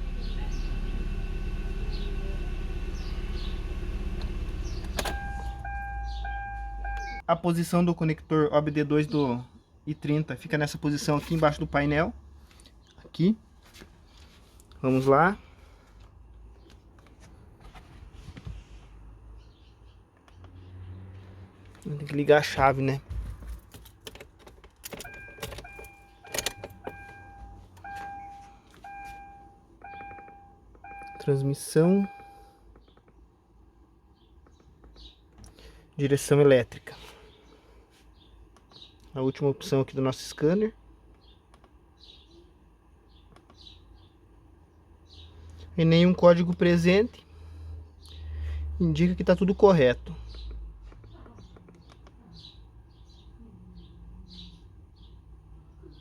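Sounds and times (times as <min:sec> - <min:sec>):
car engine idling: 0:00.0 - 0:07.2, 0:20.0 - 0:36.0
bird chirps: 0:04.6 - 0:07.2
car keys jangling: 0:23.4 - 0:31.0
electronic beeps: 0:25.0 - 0:31.3.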